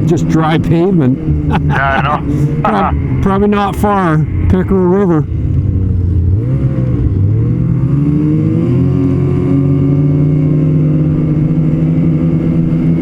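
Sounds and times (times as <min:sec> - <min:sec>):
snowmobile engine: 0:01.5 - 0:08.6.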